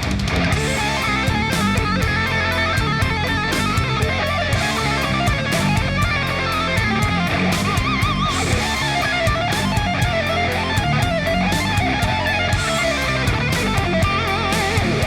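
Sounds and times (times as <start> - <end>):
distorted electric guitar: 0.0 - 15.0
rock music: 0.0 - 15.0
steady drum beat: 0.0 - 15.0
wavering lead guitar: 0.0 - 15.0.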